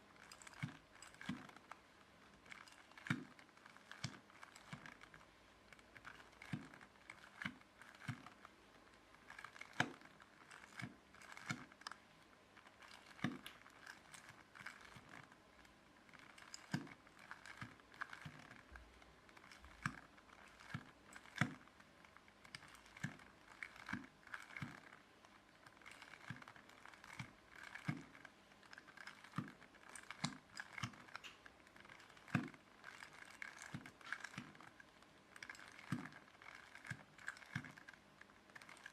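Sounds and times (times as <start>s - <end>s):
plastic puzzle cube clicking: 2.4s - 5.2s, 12.6s - 18.7s, 19.3s - 25.0s, 25.7s - 38.9s.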